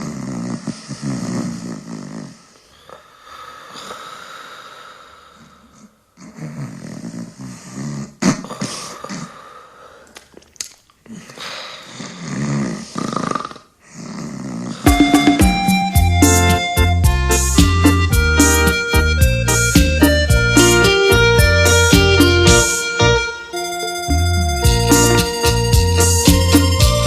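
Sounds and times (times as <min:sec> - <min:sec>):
rasping snores: 0:00.0 - 0:09.5, 0:11.1 - 0:15.1.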